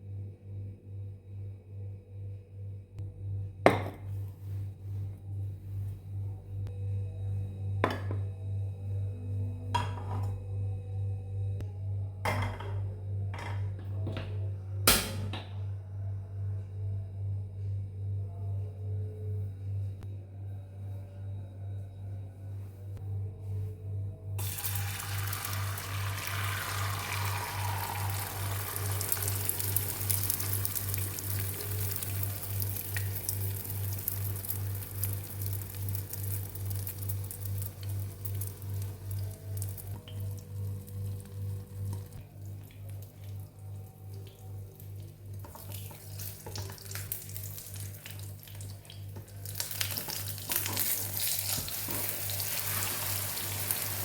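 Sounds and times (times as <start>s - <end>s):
food sizzling in a pan: 24.4s - 39.9s, 49.4s - 54.0s.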